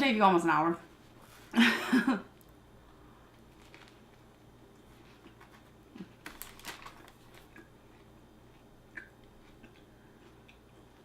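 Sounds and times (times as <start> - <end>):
chewing sandwich: 3.4 - 11.0.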